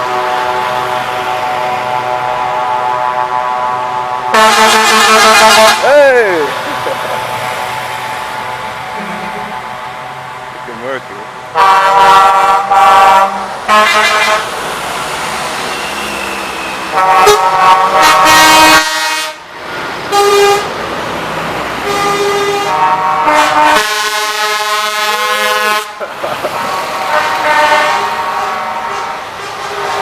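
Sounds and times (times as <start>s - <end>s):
truck air horns honking: 0.0s - 6.6s, 9.0s - 10.2s, 11.5s - 14.6s, 15.6s - 19.5s, 20.1s - 20.8s, 21.8s - 30.0s
traffic noise: 0.0s - 30.0s.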